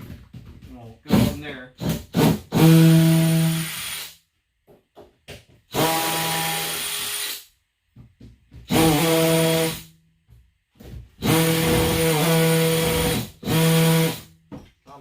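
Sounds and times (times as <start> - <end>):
power drill whining: 11.2 - 14.3.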